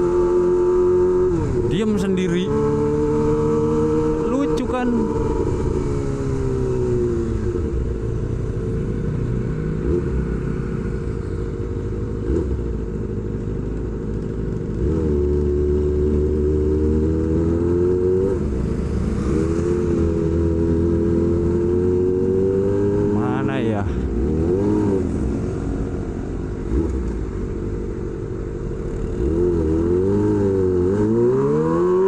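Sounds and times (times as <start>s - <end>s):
motorcycle engine revving: 0.0s - 13.1s, 14.2s - 32.0s.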